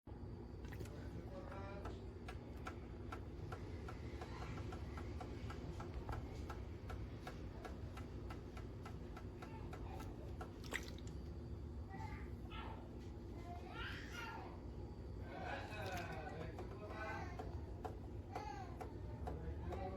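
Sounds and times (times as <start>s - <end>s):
low steady hum: 0.1s - 19.9s.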